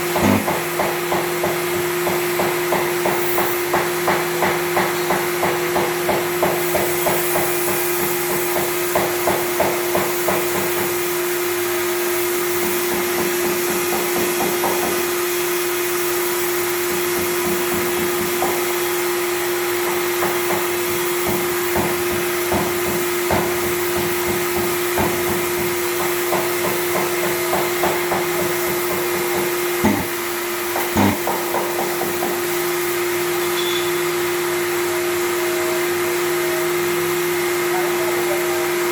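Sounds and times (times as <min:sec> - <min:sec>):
motor humming: 0:00.0 - 0:00.8, 0:29.1 - 0:31.4
sharp knocks: 0:00.2 - 0:07.2, 0:26.3 - 0:30.2, 0:30.8 - 0:32.4.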